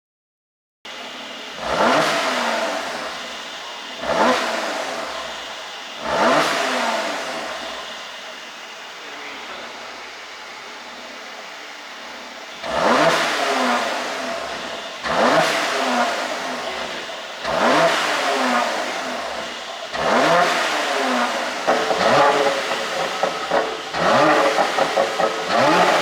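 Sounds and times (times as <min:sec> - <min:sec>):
car exhaust idling and revving: 0:00.9 - 0:08.9, 0:10.9 - 0:26.0
exhaust crackling and popping: 0:12.6 - 0:26.0.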